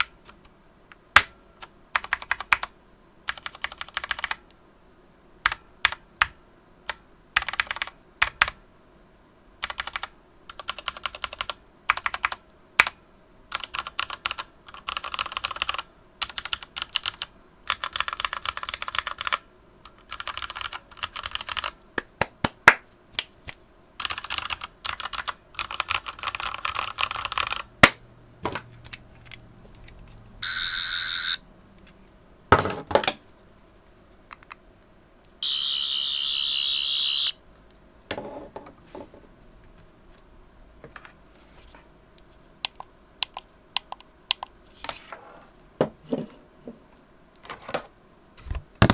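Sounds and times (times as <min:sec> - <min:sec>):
mechanical keyboard typing: 0:02.0 - 0:02.7, 0:03.3 - 0:04.4, 0:07.4 - 0:08.6, 0:09.6 - 0:21.8, 0:24.0 - 0:27.7.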